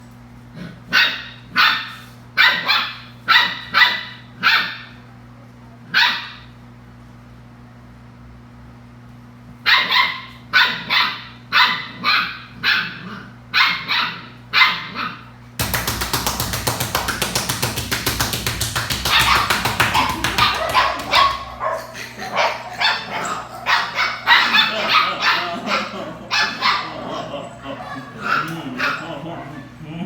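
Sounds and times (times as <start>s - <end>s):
puppies yapping: 9.7s - 15.2s, 18.8s - 29.8s
music with fast beat: 15.6s - 21.4s.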